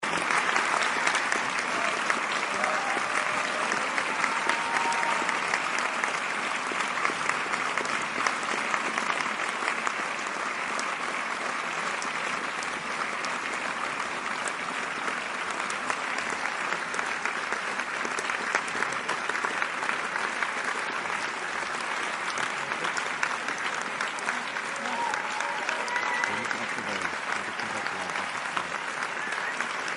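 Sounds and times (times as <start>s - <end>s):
audience applauding: 0.0s - 29.9s.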